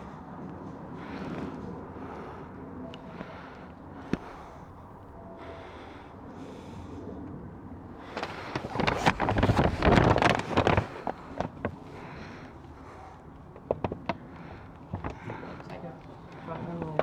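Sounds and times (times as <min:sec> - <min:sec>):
rustling on microphone: 0:08.0 - 0:12.2.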